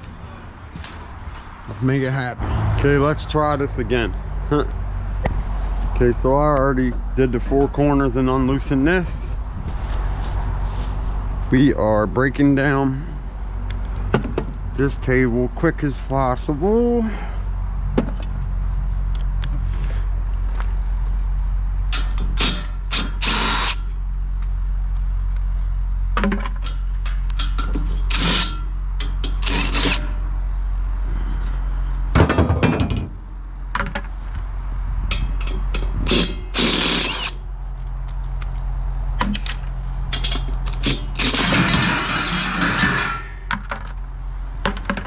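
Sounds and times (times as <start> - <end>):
steady low hum: 0.0 - 45.0
power drill running: 22.9 - 23.8, 36.1 - 37.4
metal clanks and clicks: 26.2 - 30.1, 35.1 - 36.5, 39.2 - 44.0.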